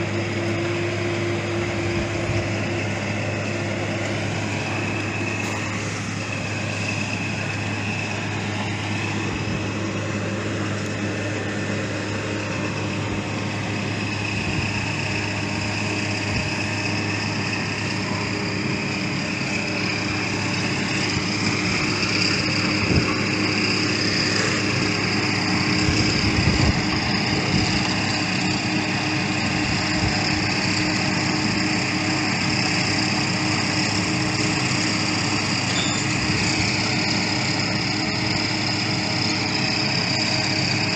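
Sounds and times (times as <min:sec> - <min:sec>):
construction machinery engine running: 0:00.0 - 0:40.9.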